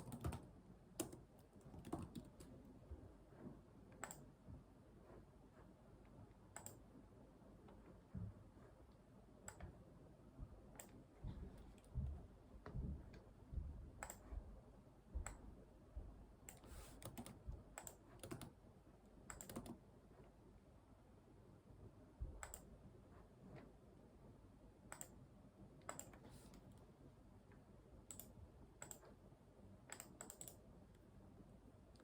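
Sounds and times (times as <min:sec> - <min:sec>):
keyboard typing: 0:00.0 - 0:02.7, 0:06.5 - 0:06.9, 0:16.4 - 0:18.6, 0:19.2 - 0:19.8, 0:25.8 - 0:26.5, 0:28.0 - 0:29.2, 0:29.8 - 0:31.0
mouse clicks: 0:03.9 - 0:04.3, 0:06.5 - 0:06.8, 0:14.0 - 0:14.3, 0:24.9 - 0:25.2, 0:28.1 - 0:29.2, 0:29.9 - 0:30.6.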